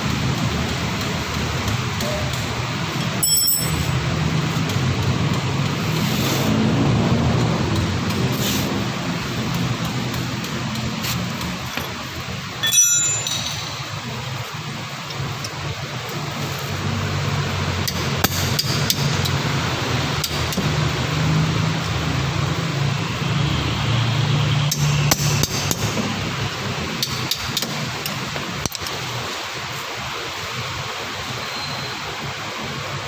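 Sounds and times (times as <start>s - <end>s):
hand tools knocking on metal: 3.1s - 4.0s, 12.6s - 14.2s.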